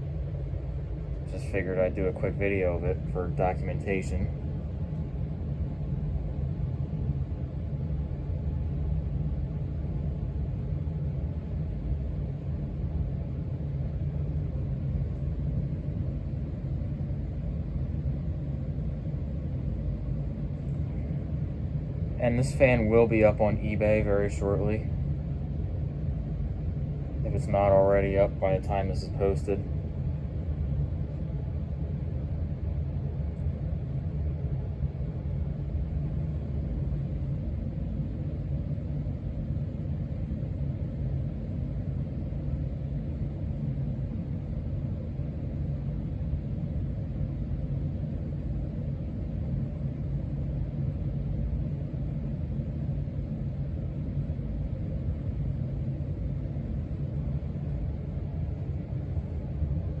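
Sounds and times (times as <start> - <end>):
ceiling fan running: 0.0 - 60.0.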